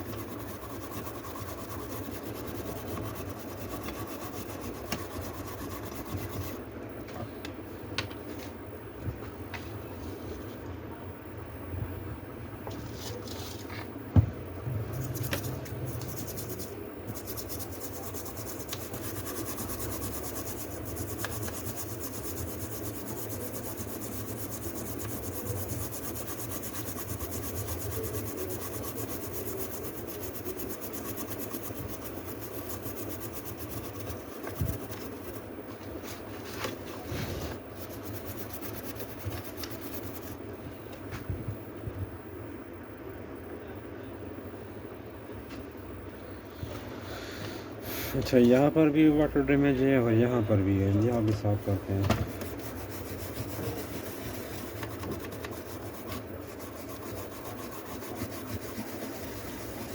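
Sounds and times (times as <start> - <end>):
scratchy scrubbing on circuit board: 0.0 - 6.6, 14.7 - 40.4, 50.8 - 59.9.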